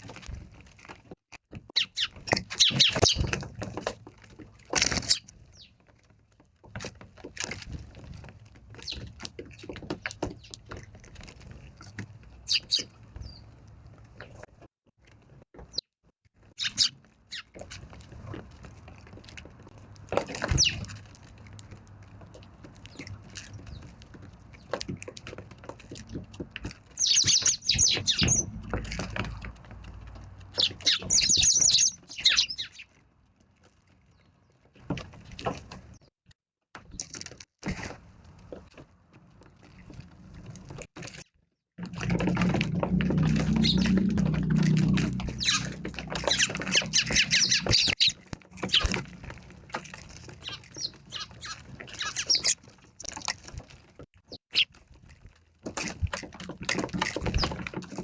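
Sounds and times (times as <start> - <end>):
sparrows chirping: 1.8 - 3.3, 8.8 - 9.1, 12.4 - 13.5, 16.6 - 17.6, 20.5 - 20.9, 26.9 - 28.6, 30.5 - 32.9, 43.6 - 43.9, 45.2 - 48.9, 50.4 - 52.6.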